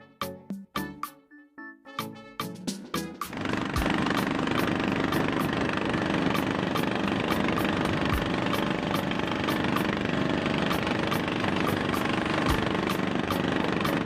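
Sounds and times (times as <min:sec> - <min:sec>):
motorboat engine running: 0:03.3 - 0:14.0.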